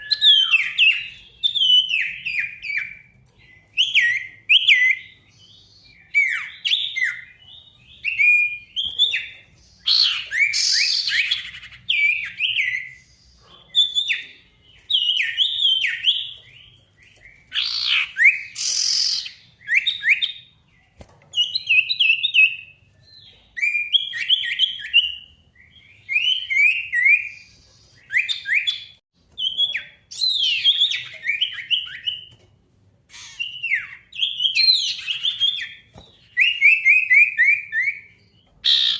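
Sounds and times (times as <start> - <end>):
harsh bird call: 38.6 - 38.9.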